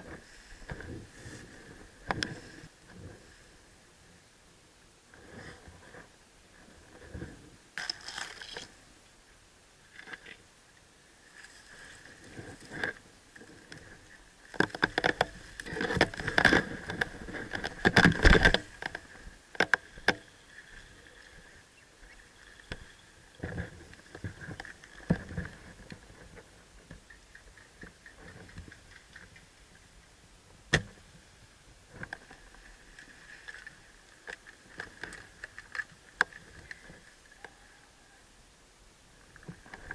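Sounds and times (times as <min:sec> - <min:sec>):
rustling scraping and knocking: 0:11.4 - 0:21.4, 0:22.5 - 0:29.4.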